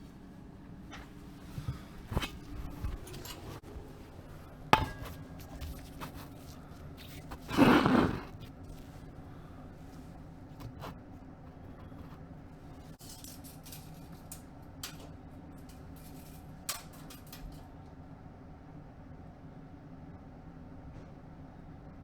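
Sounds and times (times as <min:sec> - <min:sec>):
low steady hum: 0:00.0 - 0:22.0
scrape or rustle: 0:01.0 - 0:14.4
metallic ring: 0:04.8 - 0:05.6.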